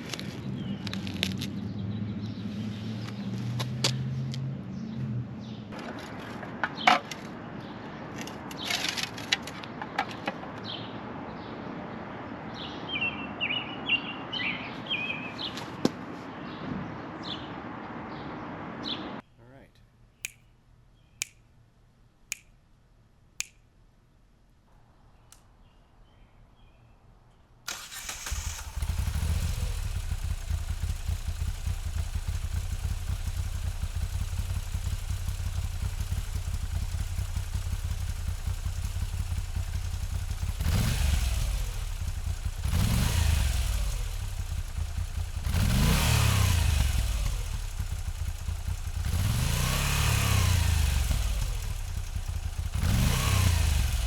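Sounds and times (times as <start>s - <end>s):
motorcycle engine idling and revving: 0.0s - 11.5s, 27.7s - 54.0s
sharp clicks: 20.2s - 20.6s, 21.2s - 21.6s, 22.3s - 22.6s, 23.4s - 23.8s.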